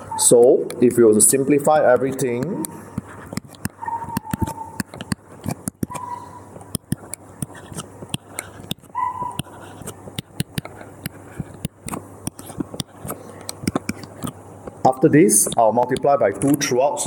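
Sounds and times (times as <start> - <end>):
dog whimpering: 3.7 - 4.8, 5.9 - 6.5, 8.9 - 9.6.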